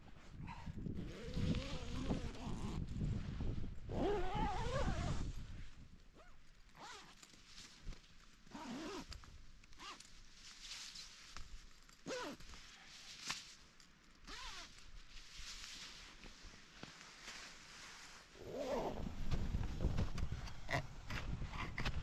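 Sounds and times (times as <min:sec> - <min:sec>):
storm wind buffeting microphone: 0:18.9 - 0:22.0.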